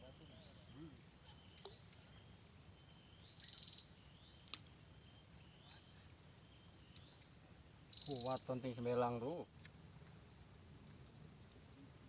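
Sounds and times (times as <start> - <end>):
high-pitched insect drone: 7.8 - 9.5.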